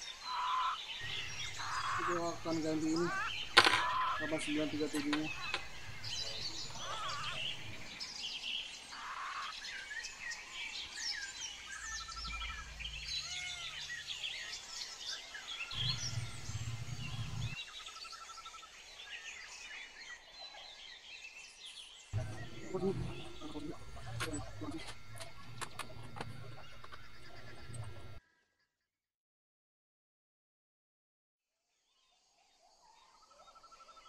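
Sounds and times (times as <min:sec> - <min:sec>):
small birds chirping: 0:00.0 - 0:28.2
low hum: 0:01.0 - 0:08.0, 0:15.8 - 0:17.6, 0:22.2 - 0:28.2.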